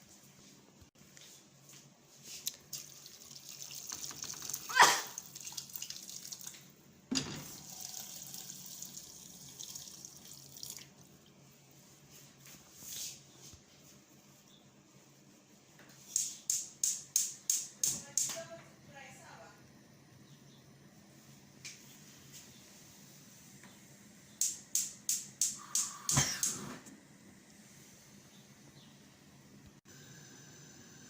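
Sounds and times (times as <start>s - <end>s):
water trickling: 2.5s - 6.7s, 7.4s - 11.3s
water running from a tap: 2.6s - 6.7s, 7.4s - 11.0s.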